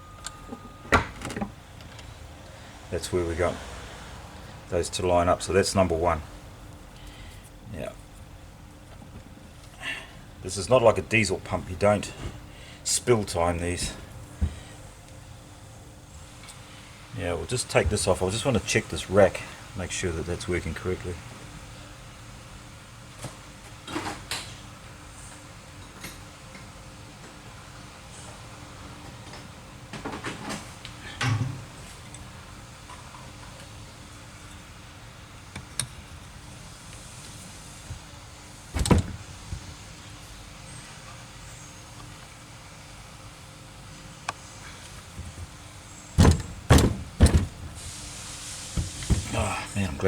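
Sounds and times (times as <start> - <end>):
faint steady hum: 0.0 - 29.4
loud sharp knocks on metal: 46.2 - 47.8.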